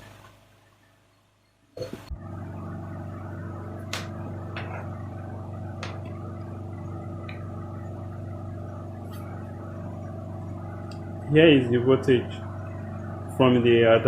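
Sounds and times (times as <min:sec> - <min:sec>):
steady electrical hum: 0:00.0 - 0:14.0.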